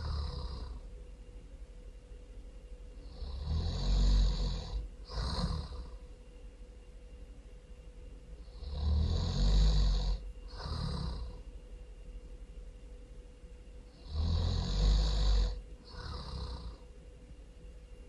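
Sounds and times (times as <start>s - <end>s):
person snoring loudly: 0.0s - 0.8s, 3.0s - 6.0s, 8.4s - 11.4s, 14.0s - 16.8s.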